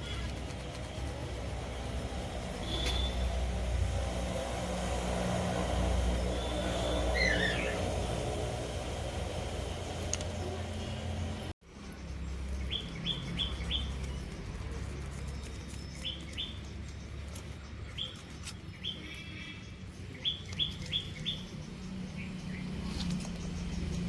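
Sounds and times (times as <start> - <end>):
low steady background rumble: 0.0 - 24.0
bird chirping: 6.1 - 8.0, 9.8 - 24.0.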